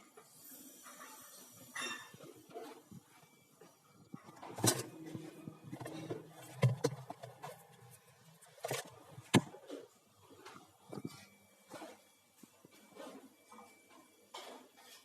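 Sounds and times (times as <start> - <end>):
knocks and clatter of handling: 1.8 - 12.0.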